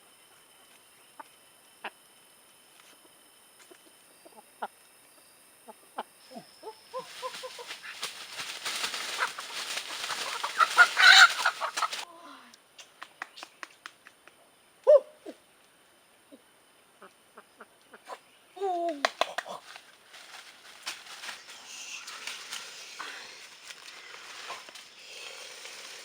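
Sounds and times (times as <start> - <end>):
chickens clucking and squawking: 6.6 - 12.1.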